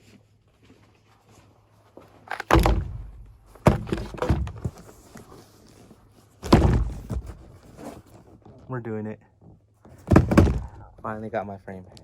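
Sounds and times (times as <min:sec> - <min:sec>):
heavy thuds indoors: 0:02.5 - 0:04.8, 0:06.4 - 0:07.6, 0:10.0 - 0:11.0.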